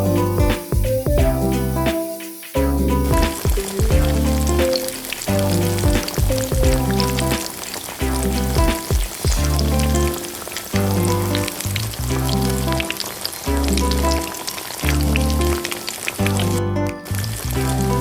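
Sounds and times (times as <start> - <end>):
background music with bass notes: 0.0 - 12.8, 13.5 - 14.2, 14.8 - 18.0
meat sizzling in hot fat: 0.0 - 16.4.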